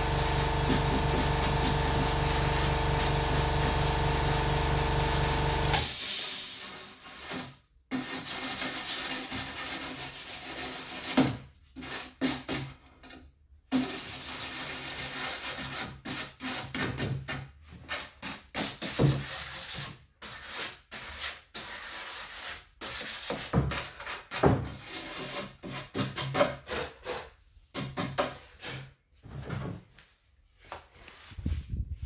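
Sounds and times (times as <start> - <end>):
sandpaper scraping plywood: 0.0 - 5.8.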